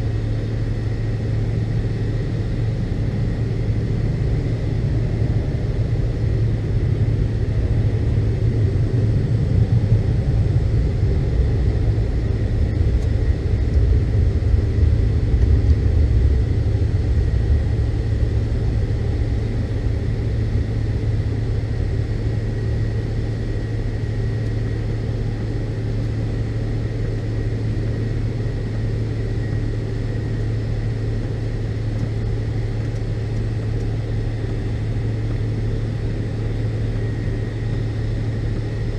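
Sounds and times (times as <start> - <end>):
jet engine cabin drone: 0.0 - 38.9
low rumble: 1.8 - 22.4.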